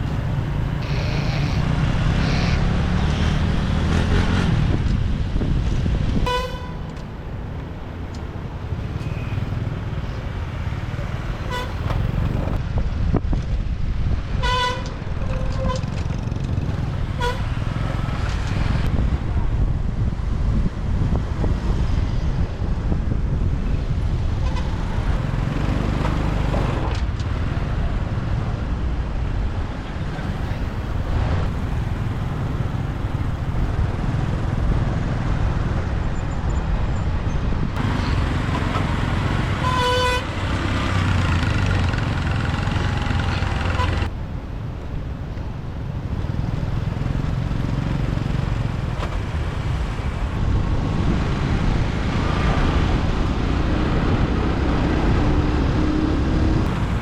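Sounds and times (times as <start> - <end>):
motorbike engine: 0.0 - 5.1, 25.1 - 27.0, 37.8 - 44.3, 45.8 - 50.4, 55.9 - 57.0
street traffic: 0.0 - 57.0
vehicle horn honking: 0.8 - 2.8, 6.3 - 6.9, 11.4 - 12.0, 14.4 - 15.8, 17.2 - 17.6, 37.8 - 44.1.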